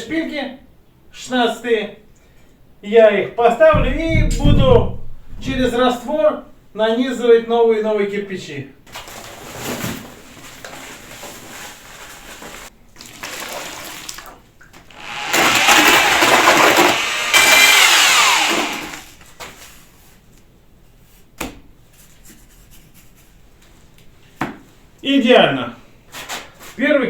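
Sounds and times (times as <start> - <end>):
power tool whine: 14.9 - 19.2.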